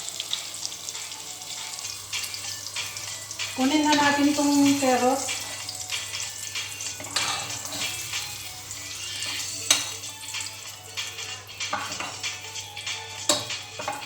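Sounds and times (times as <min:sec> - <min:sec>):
vegetables frying in hot oil: 0:00.0 - 0:14.0
utensil scraping and clinking on pan: 0:06.8 - 0:08.1, 0:09.1 - 0:10.1, 0:11.3 - 0:12.3, 0:13.2 - 0:14.0.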